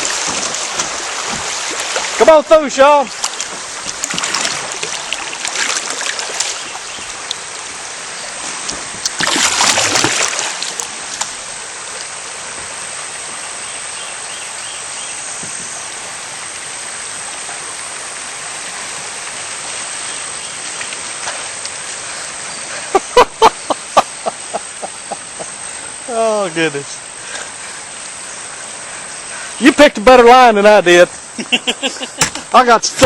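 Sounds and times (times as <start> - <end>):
water splashing: 0.0 - 13.4, 15.5 - 23.3
shallow water rippling: 0.0 - 32.7.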